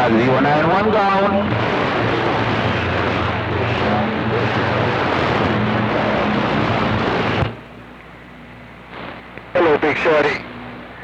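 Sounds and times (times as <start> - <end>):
garbled radio voices: 0.0 - 6.5, 9.5 - 10.6
radio static rushing: 0.0 - 7.6, 8.9 - 11.0
low hum: 0.0 - 9.5.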